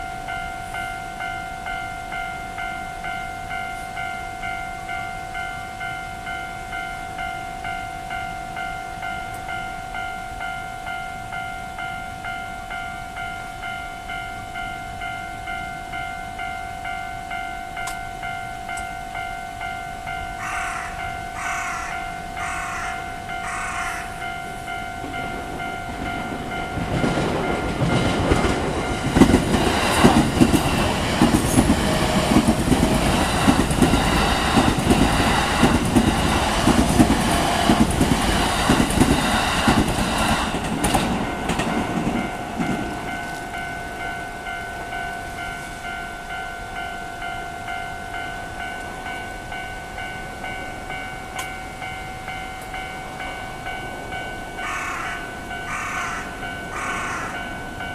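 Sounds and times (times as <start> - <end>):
level crossing warning bell: 0.0 - 57.9
train wheels clacking over rails: 25.0 - 43.7.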